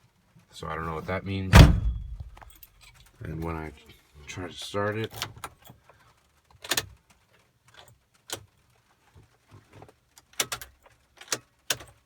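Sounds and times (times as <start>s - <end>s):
car keys jangling: 1.6s - 3.0s.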